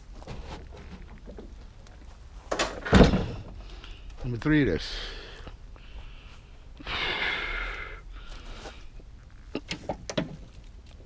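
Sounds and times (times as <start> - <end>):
person exhaling heavily: 5.0 - 8.8.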